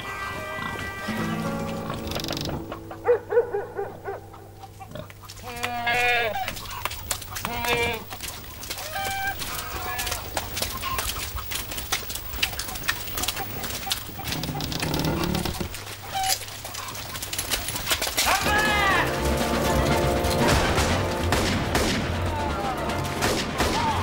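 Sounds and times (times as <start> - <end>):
chicken clucking: 0.6 - 20.3
goat bleating: 4.7 - 8.2.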